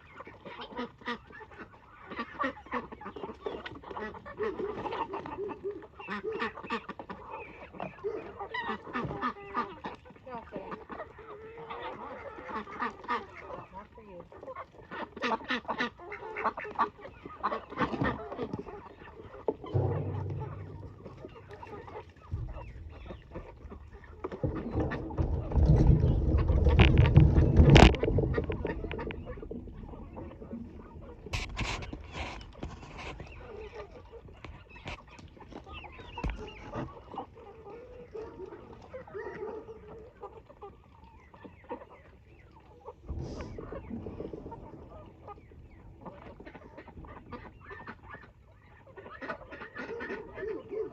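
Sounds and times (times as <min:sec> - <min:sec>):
chickens clucking: 0:00.0 - 0:50.9
poultry calling: 0:19.7 - 0:27.0
single knock: 0:19.8 - 0:23.6.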